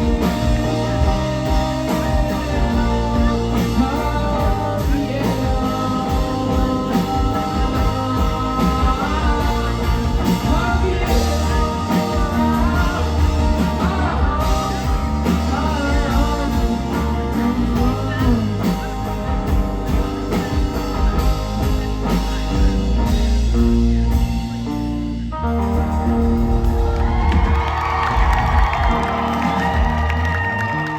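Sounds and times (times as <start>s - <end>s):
person singing: 0.0s - 22.8s
bass guitar: 0.0s - 30.9s
drum kit: 0.0s - 30.9s
electric guitars: 0.0s - 30.9s.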